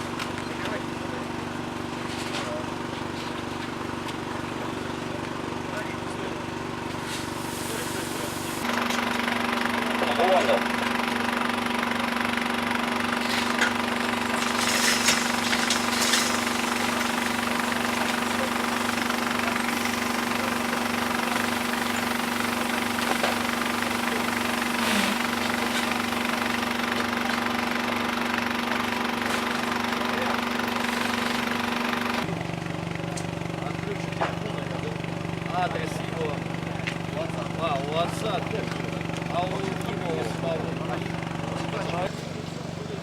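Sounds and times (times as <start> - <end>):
motor humming with pulsing beat: 15.4 - 32.5.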